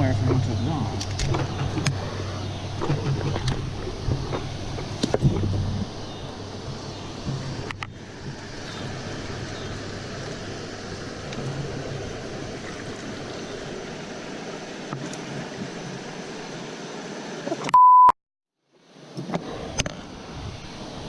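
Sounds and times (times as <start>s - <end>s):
flowing creek water: 0.0s - 17.7s, 18.7s - 21.0s
electronic beep: 17.7s - 18.2s.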